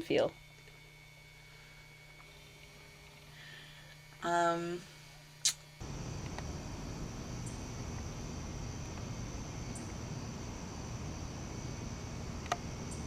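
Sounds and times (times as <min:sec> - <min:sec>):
soft outdoor hiss: 0:00.0 - 0:13.0
crickets trilling: 0:05.4 - 0:13.0.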